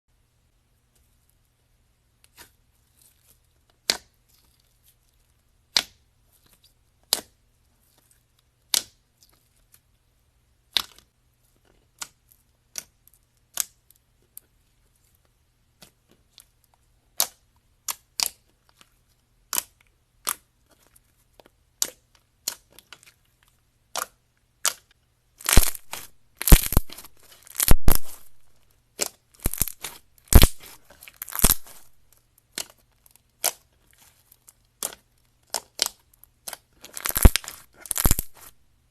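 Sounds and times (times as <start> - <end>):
slime squeezed popping: 25.4 - 28.4, 29.4 - 31.9, 37.0 - 38.5.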